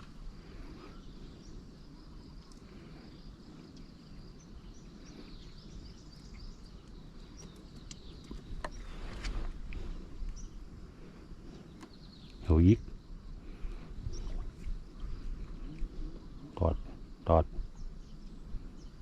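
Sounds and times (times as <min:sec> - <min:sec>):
faint clicks: 0:06.8 - 0:08.8.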